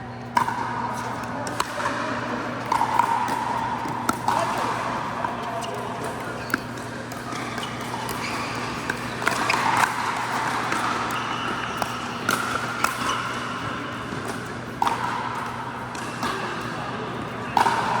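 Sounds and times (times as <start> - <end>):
indoor court din: 0.0 - 18.0
paddles hitting plastic ball: 2.6 - 11.2.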